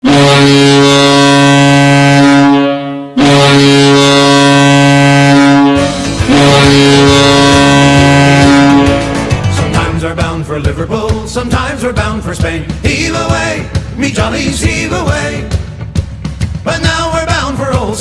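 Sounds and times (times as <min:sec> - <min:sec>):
deep air horn blast: 0:00.0 - 0:10.0
song with drum beat: 0:05.8 - 0:18.0.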